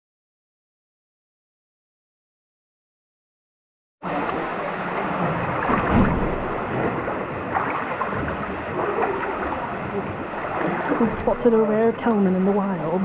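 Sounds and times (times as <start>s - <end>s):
river water rushing: 4.0s - 13.0s
water splashing: 4.0s - 13.0s.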